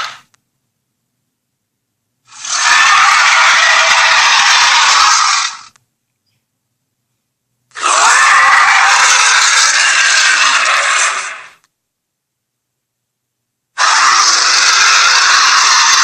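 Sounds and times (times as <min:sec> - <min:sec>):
harsh hissing blasts: 0:02.3 - 0:05.7, 0:07.8 - 0:11.6, 0:13.8 - 0:16.0.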